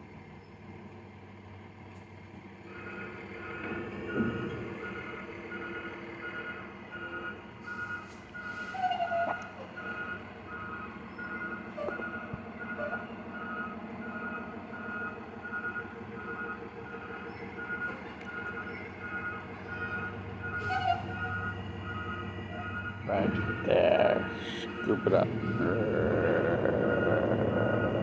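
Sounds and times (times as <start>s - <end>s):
engine running: 0.0s - 28.0s
vehicle reversing alarm beeping: 2.7s - 28.0s
brief squeal: 7.7s - 9.6s, 20.6s - 21.4s.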